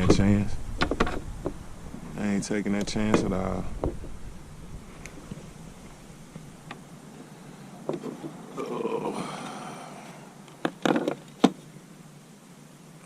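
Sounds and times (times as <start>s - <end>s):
sharp clicks or knocks: 0.0s - 1.6s
man exclaiming: 8.6s - 9.5s.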